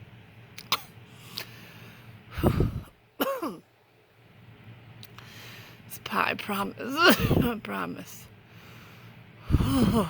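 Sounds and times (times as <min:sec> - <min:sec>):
man coughing: 0:03.2 - 0:03.6.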